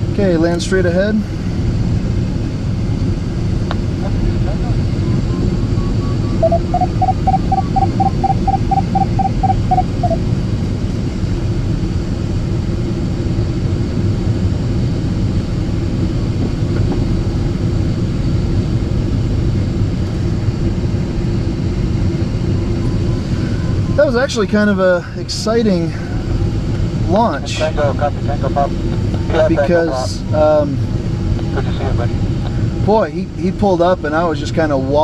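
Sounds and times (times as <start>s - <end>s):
rushing airflow in cockpit: 0.0s - 34.4s
rapid electronic beeps: 4.7s - 10.2s.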